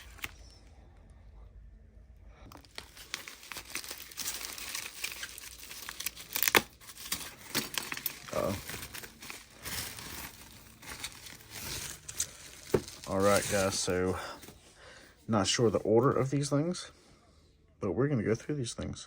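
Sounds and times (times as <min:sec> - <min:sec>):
plastic packaging crinkling and tearing: 0:00.0 - 0:00.6, 0:02.4 - 0:14.6.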